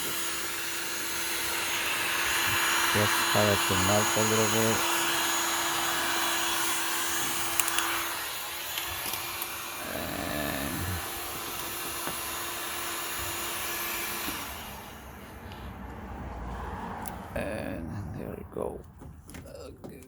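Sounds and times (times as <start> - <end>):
heat gun blowing: 0.0 - 16.0.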